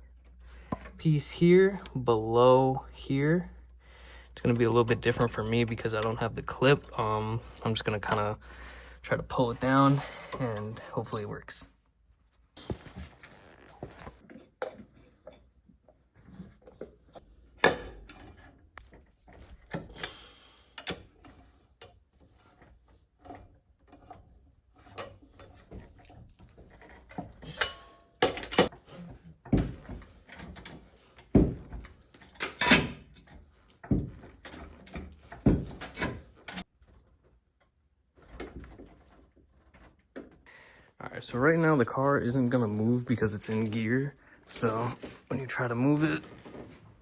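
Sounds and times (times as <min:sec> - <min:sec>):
metallic clanks and scrapes: 0:16.3 - 0:36.7.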